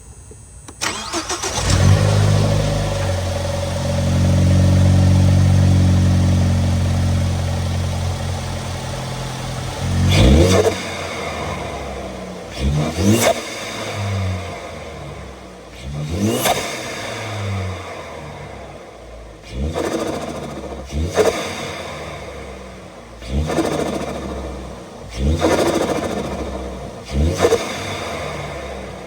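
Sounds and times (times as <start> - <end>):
car engine starting and idling: 0.2 - 29.0
engine revving: 0.8 - 29.0.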